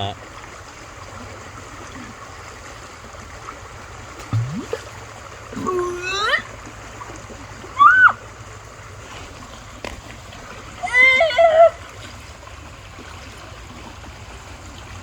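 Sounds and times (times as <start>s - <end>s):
creek water running over rapids: 0.0s - 15.0s.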